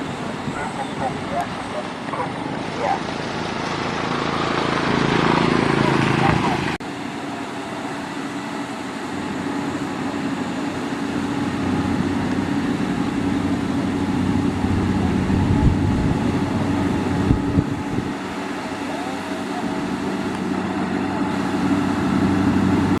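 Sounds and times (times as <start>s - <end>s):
heavy machine engine running: 0.0s - 23.0s.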